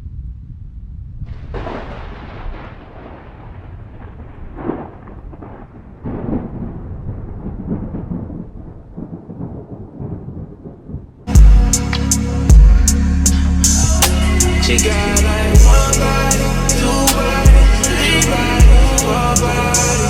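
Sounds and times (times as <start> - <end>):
thunder rumbling and cracking: 0.0 - 12.9.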